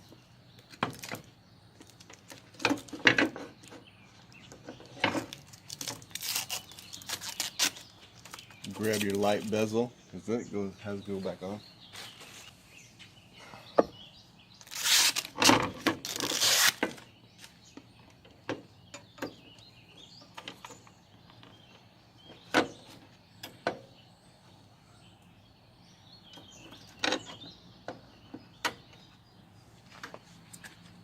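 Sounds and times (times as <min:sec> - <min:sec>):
clattering and rustling: 0:00.8 - 0:09.1.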